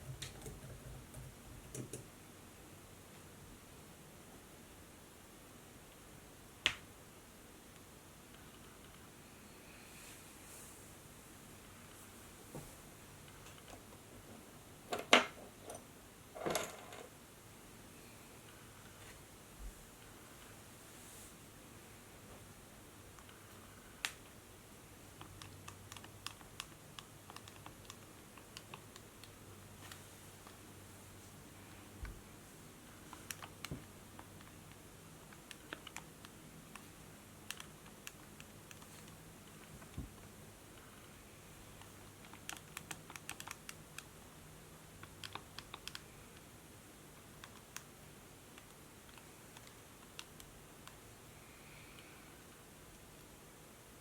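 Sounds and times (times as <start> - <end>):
laptop keyboard typing: 0.0 - 2.1, 25.1 - 30.6, 33.0 - 51.1.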